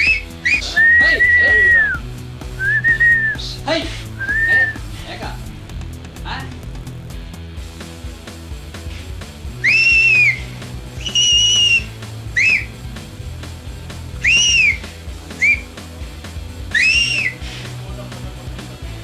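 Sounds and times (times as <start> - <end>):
shrill whistles: 0.0 - 3.4, 4.1 - 4.8, 9.5 - 12.8, 14.2 - 15.8, 16.7 - 17.5.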